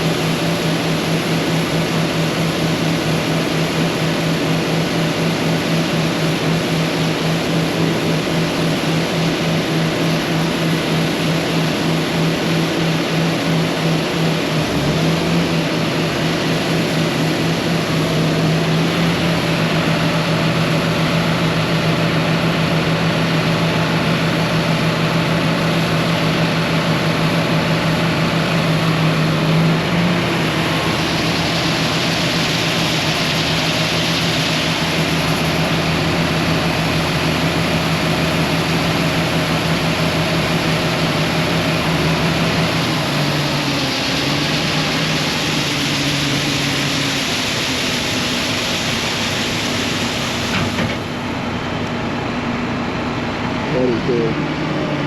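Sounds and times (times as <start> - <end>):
diesel engine droning: 0.0 - 55.0
wide hiss: 28.6 - 38.6, 41.1 - 51.5.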